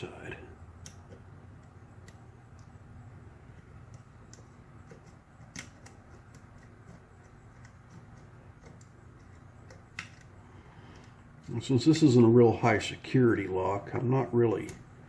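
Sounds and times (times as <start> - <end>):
steady low hum: 0.0 - 15.0
lock pick clicking and scraping: 3.8 - 11.2.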